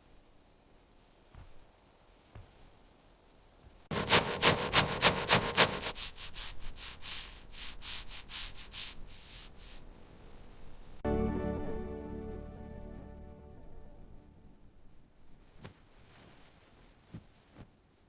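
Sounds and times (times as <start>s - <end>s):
wood hand-sanding strokes: 3.9s - 9.8s.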